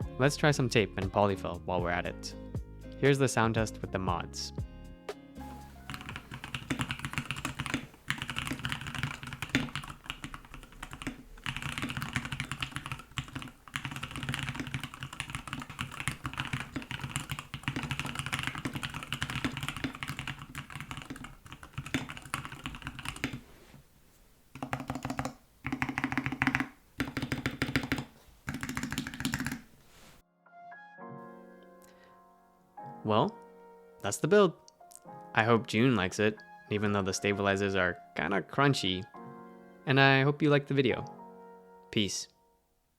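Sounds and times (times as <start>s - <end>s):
mechanical keyboard typing: 5.6s - 23.4s, 24.6s - 29.7s.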